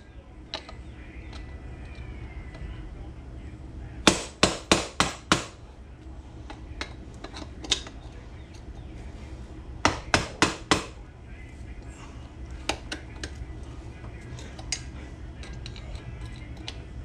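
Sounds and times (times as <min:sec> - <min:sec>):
hammer striking metal: 0:04.1 - 0:05.6.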